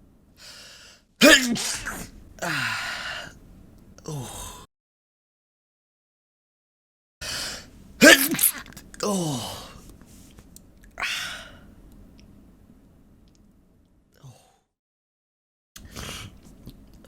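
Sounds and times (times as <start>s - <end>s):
person sneezing: 1.2s - 2.8s, 8.0s - 9.7s.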